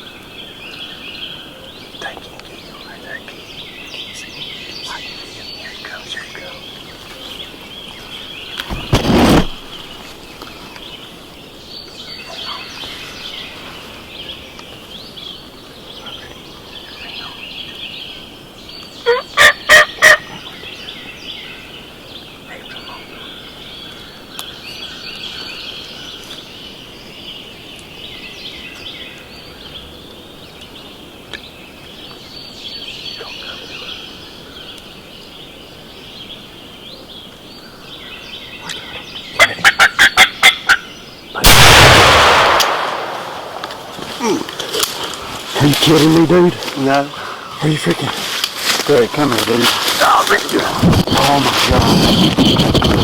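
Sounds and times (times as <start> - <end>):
songbirds chirping: 0.0 - 53.0
turkey gobbling: 19.0 - 20.4, 39.4 - 40.9
loud burst of sound: 41.4 - 44.2.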